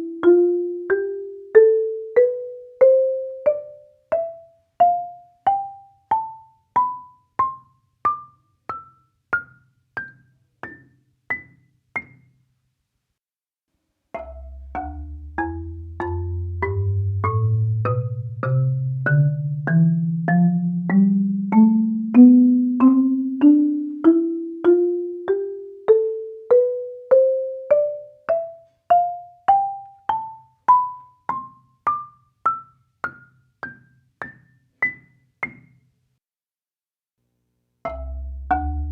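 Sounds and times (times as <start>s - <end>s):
marimba rising scales: 14.2s - 32.7s, 37.9s - 38.9s.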